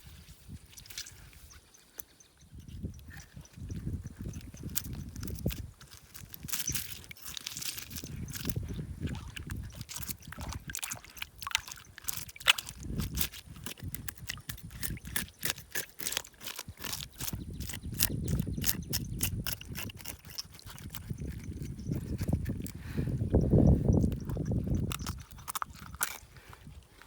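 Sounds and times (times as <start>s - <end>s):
fish cleaning clicks and scrapes: 0.5s - 27.0s
trickling dripping water: 1.7s - 26.2s.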